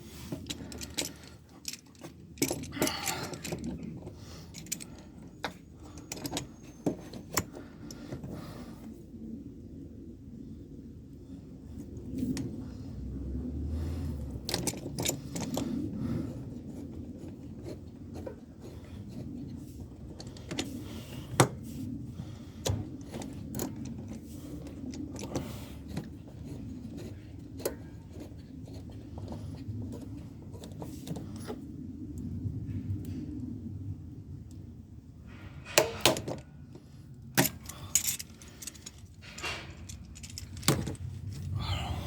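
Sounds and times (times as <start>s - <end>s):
low steady hum: 0.0s - 42.0s
light clicks and knocks of handling: 0.3s - 8.4s, 14.4s - 15.9s, 35.7s - 41.6s.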